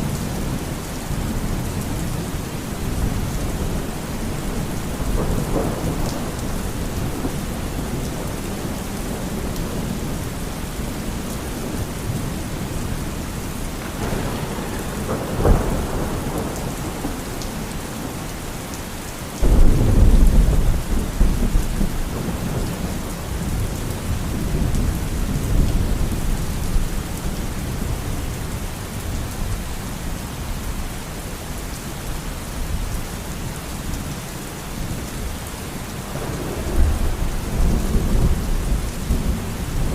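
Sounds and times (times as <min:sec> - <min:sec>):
heavy rain: 0:00.0 - 0:39.9
rolling thunderclap: 0:03.0 - 0:10.0, 0:13.8 - 0:18.2, 0:19.4 - 0:26.8.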